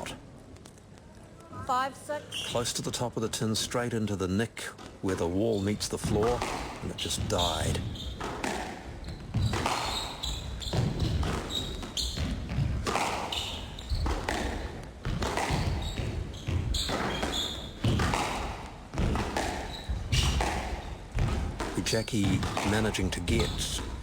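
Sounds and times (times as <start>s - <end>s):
squash ball hitting racket: 6.0s - 24.0s.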